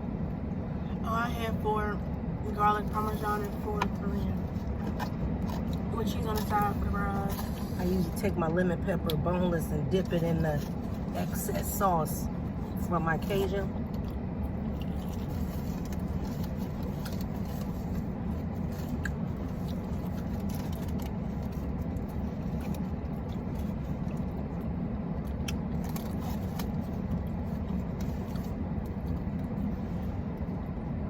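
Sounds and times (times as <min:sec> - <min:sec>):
food packaging clicks and scrapes: 0:14.8 - 0:24.3, 0:25.3 - 0:29.4.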